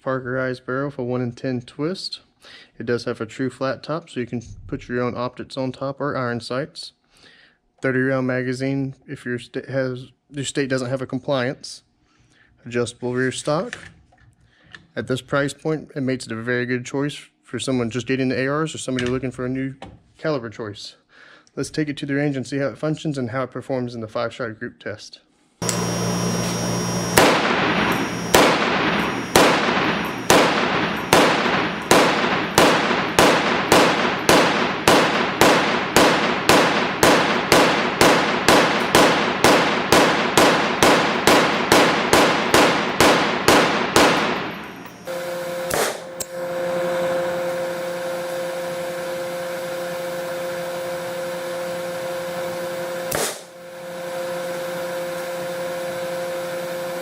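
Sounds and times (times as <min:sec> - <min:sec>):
steady hum with held tone: 0:25.6 - 0:57.0
rifle shots: 0:25.7 - 0:47.5, 0:53.1 - 0:53.5.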